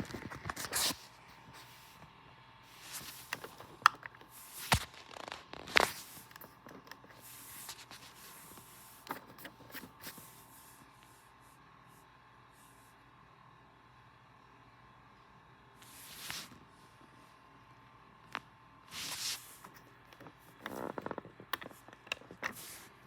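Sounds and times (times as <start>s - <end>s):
handling clicks and knocks: 19.8s - 22.6s.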